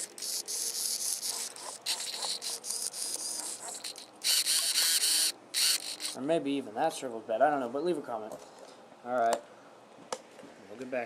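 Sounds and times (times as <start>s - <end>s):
servo grinding buzz: 0.0s - 6.2s.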